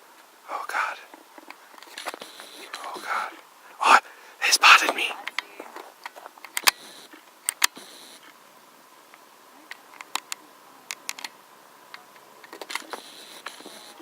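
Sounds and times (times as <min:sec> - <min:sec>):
camera whir: 0:00.0 - 0:03.5, 0:04.6 - 0:08.4, 0:09.1 - 0:14.0.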